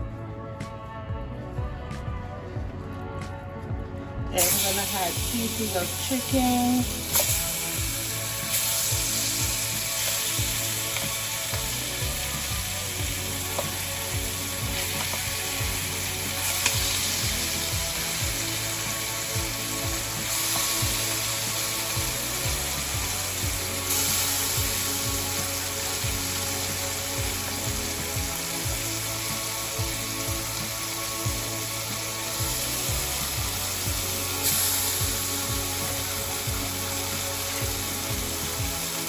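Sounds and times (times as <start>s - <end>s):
chicken sizzling in hot oil: 4.4s - 39.0s.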